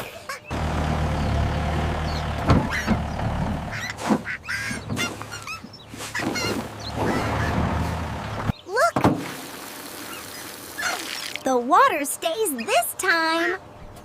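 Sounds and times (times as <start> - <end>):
excavator engine humming: 0.4 - 8.6.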